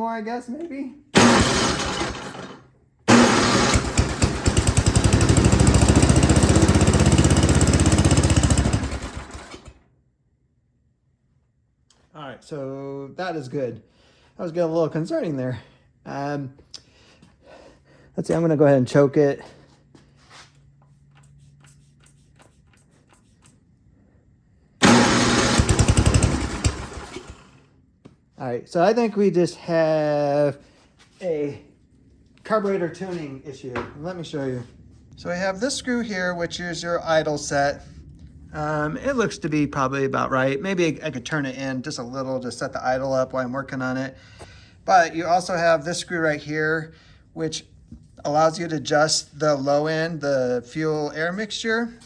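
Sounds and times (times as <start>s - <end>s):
small gas engine running: 1.2s - 9.8s, 24.8s - 27.6s.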